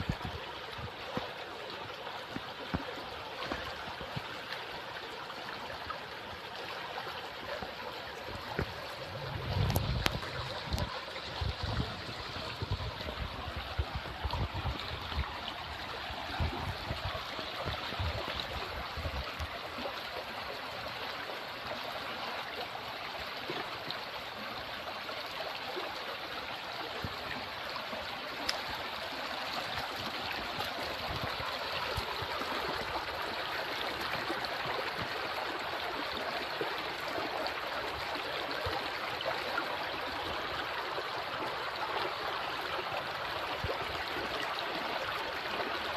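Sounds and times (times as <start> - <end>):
river water running: 0.0 - 45.9
low bumps: 8.5 - 15.3.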